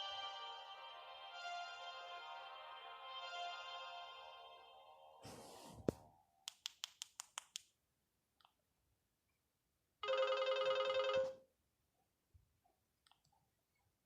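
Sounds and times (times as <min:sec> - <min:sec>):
phone ringtone: 0:10.0 - 0:11.4.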